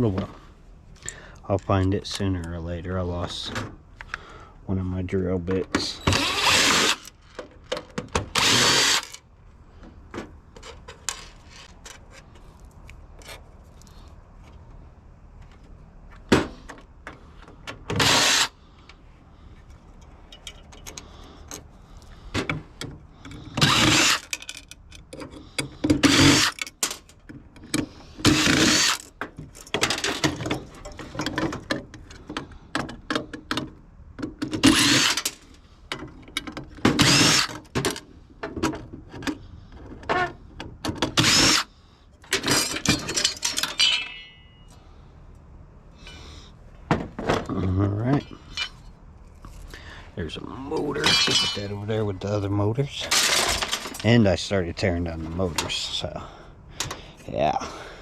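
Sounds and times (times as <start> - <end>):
metal parts and screws clinking: 5.7 - 9.3, 10.5 - 14.1, 19.6 - 22.2, 23.2 - 33.4, 34.4 - 39.4, 41.0 - 44.8, 48.2 - 49.7, 50.8 - 51.9, 52.9 - 54.2
power drill bursts: 6.0 - 7.1, 8.3 - 9.2, 17.9 - 18.6, 23.6 - 24.2, 26.0 - 26.6, 28.3 - 29.0, 34.6 - 35.2, 37.0 - 37.5, 41.2 - 41.7.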